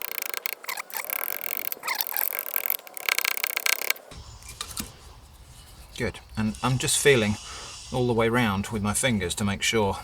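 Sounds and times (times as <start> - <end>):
carving tools scraping wood: 0.0 - 6.1.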